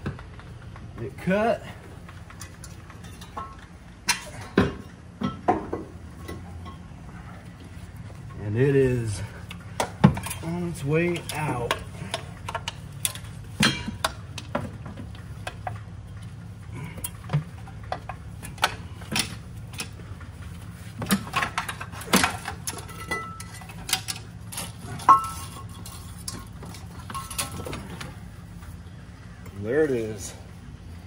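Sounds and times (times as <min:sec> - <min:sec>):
metal clinks and knocks: 0:02.0 - 0:07.5, 0:09.5 - 0:28.8.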